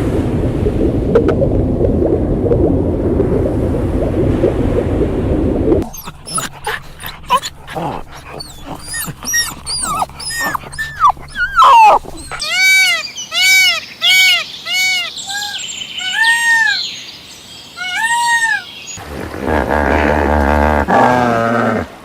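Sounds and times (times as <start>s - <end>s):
high gliding yips: 5.8s - 16.8s, 17.8s - 18.7s
arched squealing animal calls: 5.8s - 16.9s, 17.8s - 18.7s
lower animal sound: 5.8s - 16.9s, 17.8s - 21.2s.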